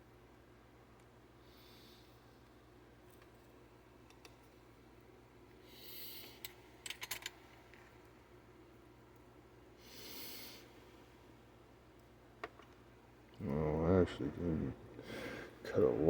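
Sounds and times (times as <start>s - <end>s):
faint low hum: 0.0s - 16.0s
soft breaths through nose: 9.8s - 11.1s.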